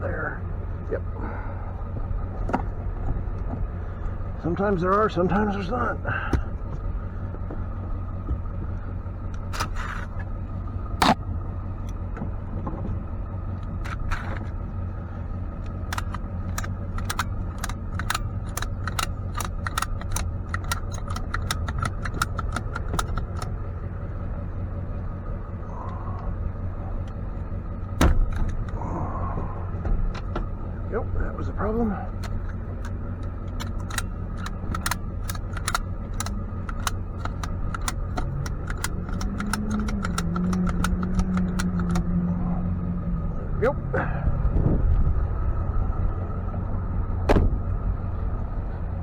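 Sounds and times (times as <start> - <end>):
truck engine idling: 0.0 - 49.0
metallic clicks and clanks: 9.3 - 10.3, 13.6 - 14.6, 15.5 - 23.7, 27.9 - 28.8, 31.7 - 42.2.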